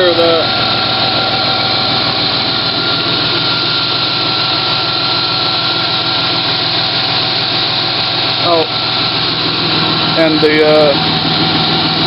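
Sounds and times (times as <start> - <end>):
car engine idling with whine: 0.0 - 12.0.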